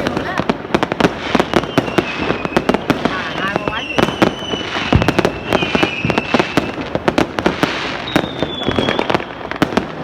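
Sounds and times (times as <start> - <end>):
fireworks bangs and crackles: 0.0 - 10.0
high firework whistle: 1.1 - 6.9, 7.5 - 9.8.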